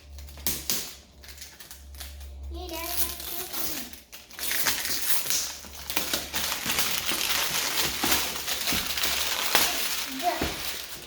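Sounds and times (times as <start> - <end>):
packaging crackling and rustling: 0.0 - 11.0
packaging tearing: 2.8 - 11.0.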